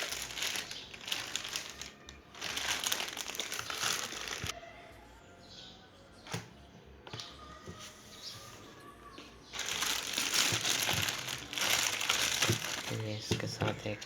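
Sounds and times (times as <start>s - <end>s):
packaging crinkling: 0.0s - 4.6s, 9.6s - 14.0s.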